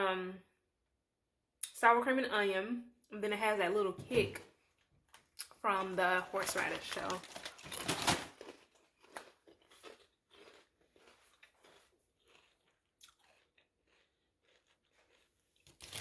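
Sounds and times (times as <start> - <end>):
person chewing potato chips: 4.8 - 16.0.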